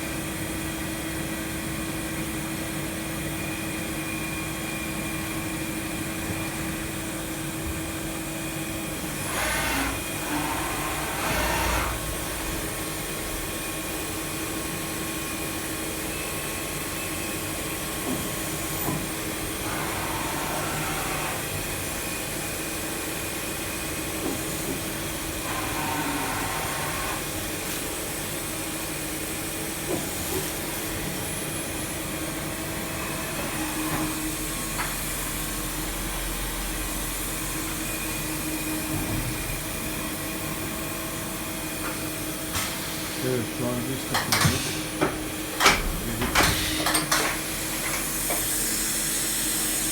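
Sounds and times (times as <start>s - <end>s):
milling machine hum and hiss: 0.0s - 49.9s.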